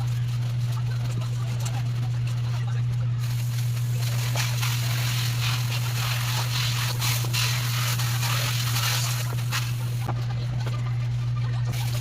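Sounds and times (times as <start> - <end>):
low electric hum: 0.0 - 12.0
water spray hissing: 3.2 - 10.1.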